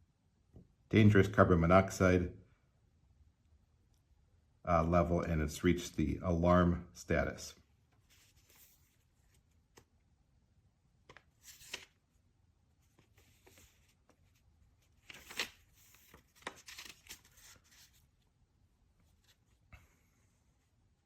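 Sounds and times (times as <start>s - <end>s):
paper pages rustling: 7.9s - 9.9s, 11.0s - 12.0s, 12.8s - 18.3s.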